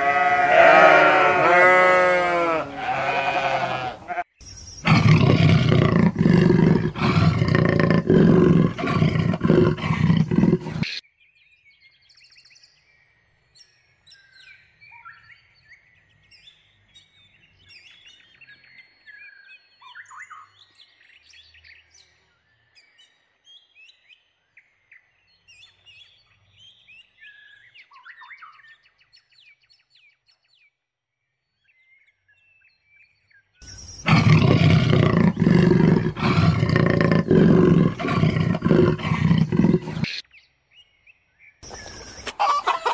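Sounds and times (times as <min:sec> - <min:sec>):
big cat roaring: 0:00.0 - 0:04.2, 0:04.8 - 0:10.9, 0:34.0 - 0:40.1.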